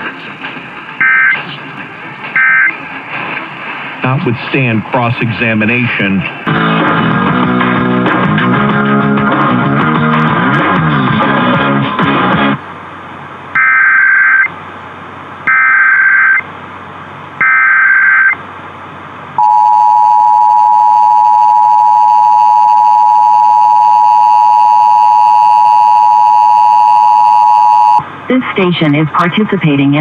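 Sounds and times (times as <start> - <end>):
data-burst screeches: 1.0 - 1.4, 2.4 - 2.7
two-tone attention signal: 1.0 - 1.4, 2.4 - 2.7, 19.4 - 28.0.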